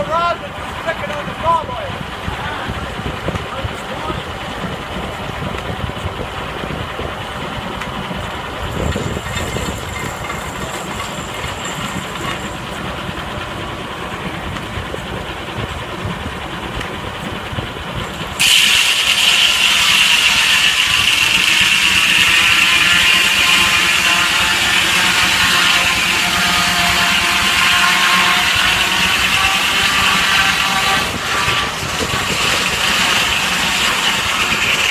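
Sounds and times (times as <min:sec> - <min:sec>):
steam engine clattering: 0:00.0 - 0:34.9
loud steam hiss: 0:17.8 - 0:34.9.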